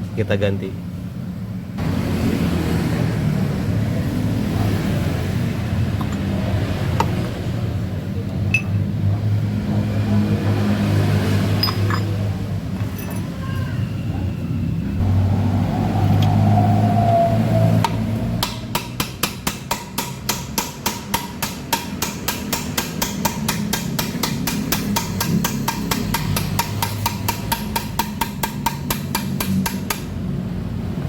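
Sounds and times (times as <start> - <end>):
low mechanical drone: 13.9 - 18.8.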